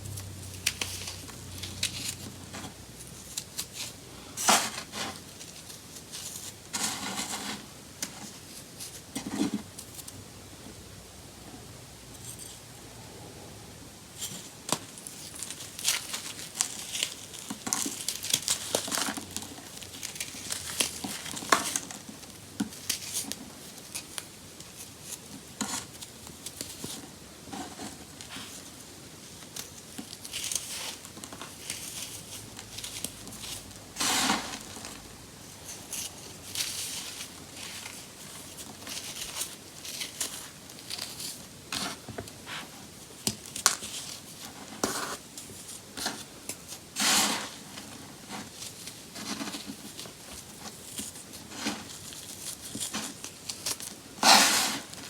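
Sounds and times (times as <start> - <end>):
baking soda crunching: 14.9 - 26.6, 48.4 - 55.0.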